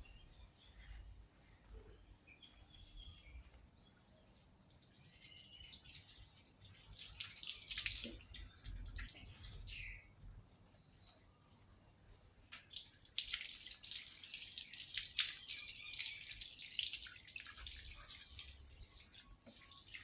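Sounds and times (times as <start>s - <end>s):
faint birds chirping: 0.0s - 20.0s
running water splashing: 5.2s - 9.8s, 12.6s - 20.0s.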